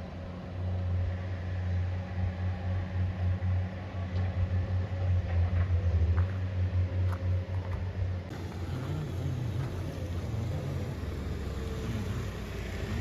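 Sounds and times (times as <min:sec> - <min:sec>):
engine running: 0:08.3 - 0:13.0.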